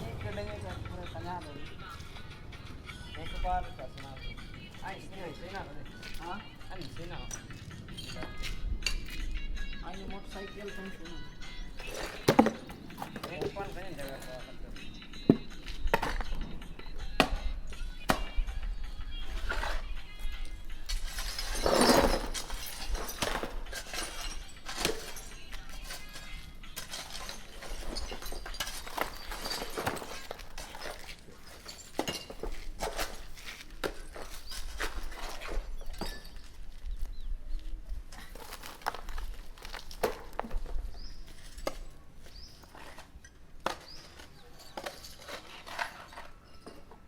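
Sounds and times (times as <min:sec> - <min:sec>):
rubble clattering and scraping: 0:10.2 - 0:47.0.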